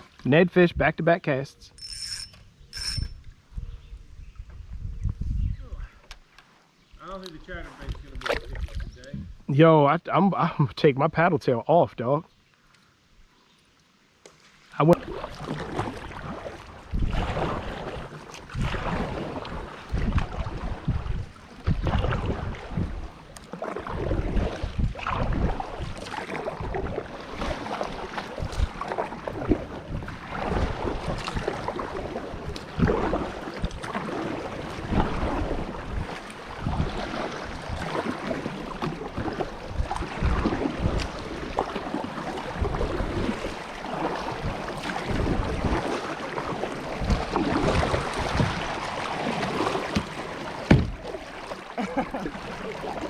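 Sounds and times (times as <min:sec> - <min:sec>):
wind buffeting microphone: 0:02.6 - 0:06.0, 0:07.4 - 0:09.5, 0:15.8 - 0:23.2, 0:24.0 - 0:41.7, 0:42.4 - 0:46.0, 0:46.8 - 0:51.2
water splashing around kayak: 0:06.2 - 0:09.1, 0:13.6 - 0:53.0.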